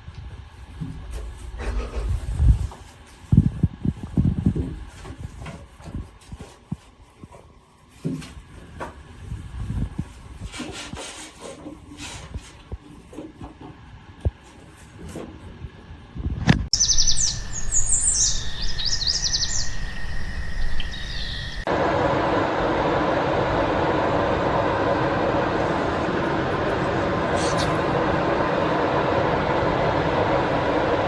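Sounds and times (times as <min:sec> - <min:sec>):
knocks and rustling: 0:00.6 - 0:15.8
bird chirping: 0:16.7 - 0:21.7.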